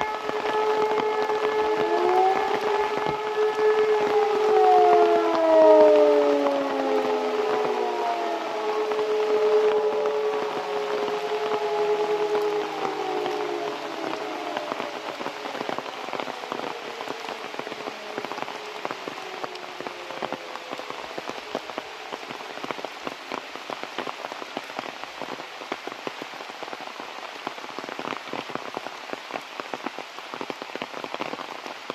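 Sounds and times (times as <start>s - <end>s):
warning siren winding down: 0.0s - 22.4s
rain drops ticking: 0.0s - 31.9s.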